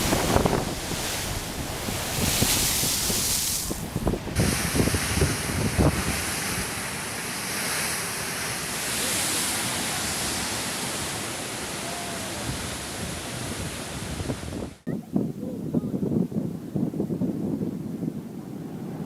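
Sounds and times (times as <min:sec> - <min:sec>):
wind buffeting microphone: 0:00.0 - 0:09.4, 0:12.4 - 0:19.0
ocean waves breaking: 0:00.0 - 0:14.8.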